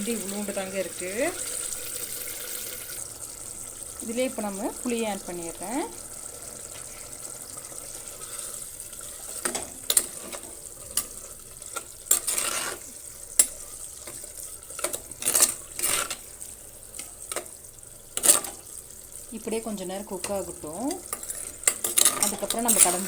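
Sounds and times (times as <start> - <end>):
pot sizzling: 0.0 - 23.0
spoon scraping a cooking pot: 8.2 - 14.2, 21.1 - 23.0.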